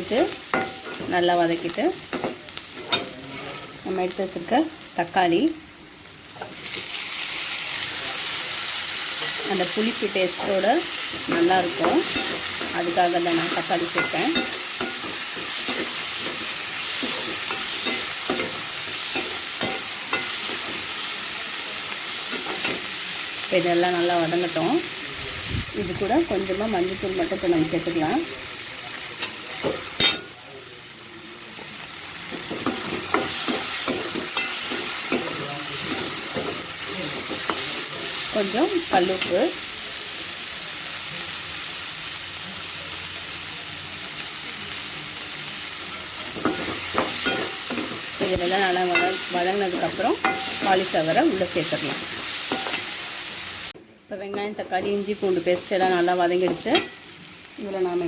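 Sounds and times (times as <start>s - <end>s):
food sizzling in hot oil: 0.0s - 58.0s
spatula scraping pan: 2.1s - 3.8s.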